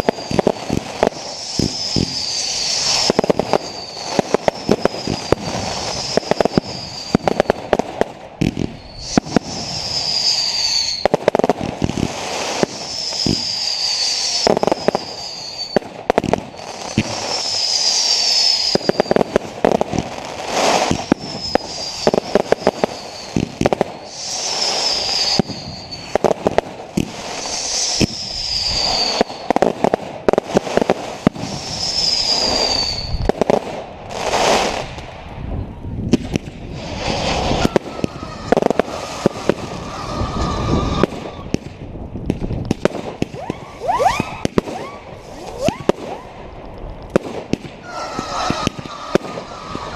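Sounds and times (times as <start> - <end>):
high whistle falling in pitch: 0.0 - 7.6, 8.8 - 11.2, 12.7 - 15.8, 16.6 - 19.4, 20.8 - 26.2, 27.4 - 29.6, 31.5 - 33.3, 43.3 - 46.0
fireworks crackling and popping: 0.0 - 49.9
heavy firework bangs: 0.0 - 49.9.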